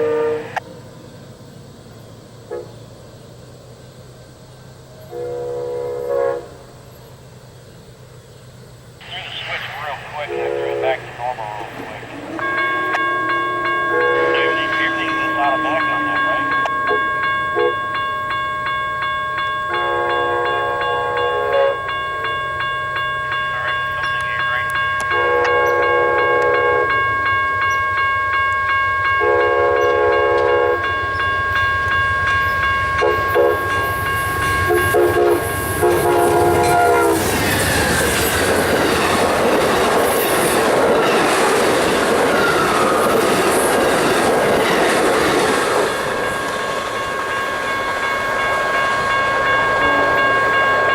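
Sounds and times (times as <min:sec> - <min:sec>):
locomotive horn blasts: 0:00.0 - 0:00.6, 0:02.5 - 0:02.8, 0:05.0 - 0:06.6, 0:10.2 - 0:11.1, 0:12.4 - 0:17.9, 0:19.7 - 0:21.9, 0:23.6 - 0:27.2, 0:29.2 - 0:31.2, 0:33.0 - 0:33.9, 0:34.5 - 0:37.3, 0:49.8 - 0:50.9
crossing bell ringing tone: 0:09.0 - 0:50.9
train wheels clickety-clack: 0:33.0 - 0:50.6.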